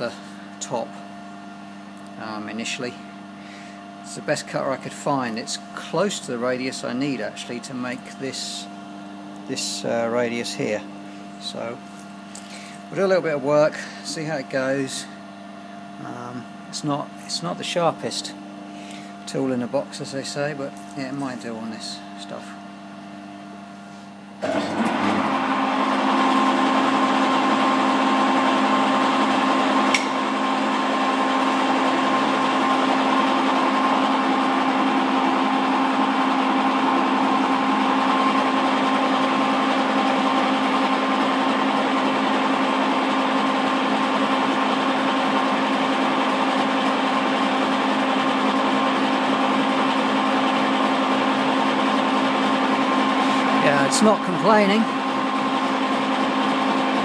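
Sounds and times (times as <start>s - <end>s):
milling machine whine: 0.0s - 57.0s
single click: 29.9s - 30.2s.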